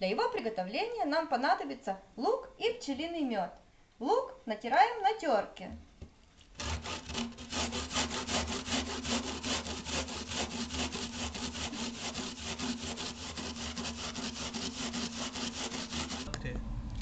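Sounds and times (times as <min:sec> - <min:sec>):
onion grated on hand grater: 0:06.6 - 0:16.3.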